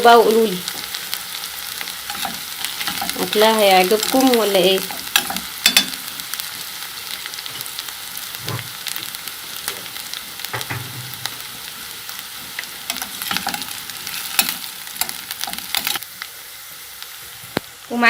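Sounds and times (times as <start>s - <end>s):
onions sizzling in oil: 0.0s - 18.0s
spoon stirring in pot: 1.9s - 3.6s, 4.8s - 6.0s, 12.3s - 16.0s.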